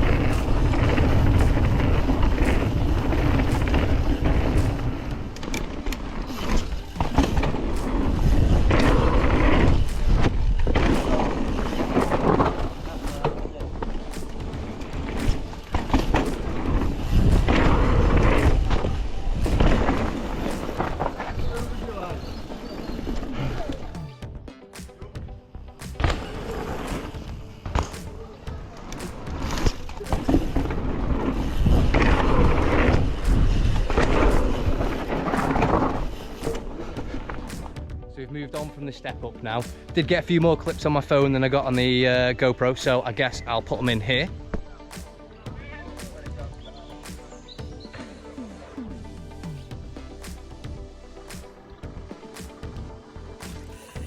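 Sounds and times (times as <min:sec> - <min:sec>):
bike tyres rolling over ground: 0:00.0 - 0:23.9, 0:25.9 - 0:38.0.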